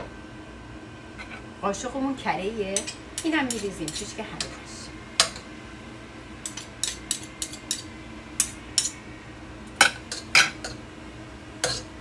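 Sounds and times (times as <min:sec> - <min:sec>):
spoon clinking against a pot: 0:02.8 - 0:04.6, 0:05.2 - 0:05.5, 0:06.4 - 0:09.0, 0:09.7 - 0:10.8, 0:11.6 - 0:11.9.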